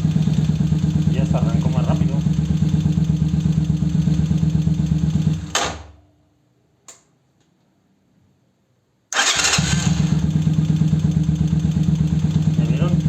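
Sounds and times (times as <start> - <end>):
motorcycle engine idling: 0.0 - 5.5, 9.2 - 13.0
click: 6.8 - 7.6
electric starter cranking: 9.2 - 10.2.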